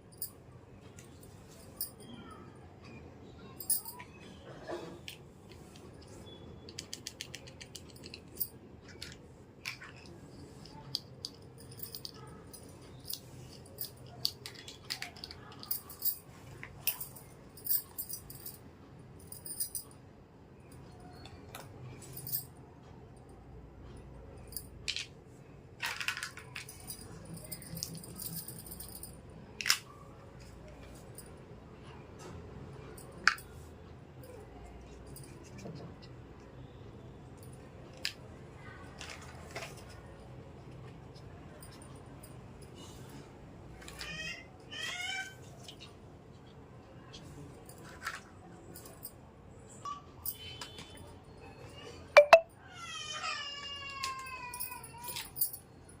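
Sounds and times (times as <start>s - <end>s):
plastic toy pieces clicking: 6.7s - 11.4s, 14.0s - 16.0s, 25.8s - 27.0s.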